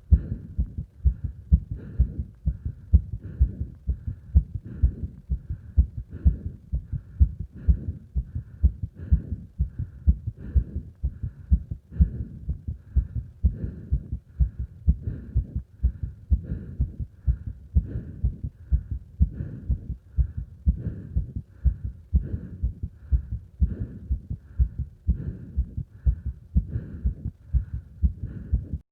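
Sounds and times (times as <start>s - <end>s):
heavy breathing: 0.0s - 28.8s
fast heartbeat: 0.0s - 28.9s.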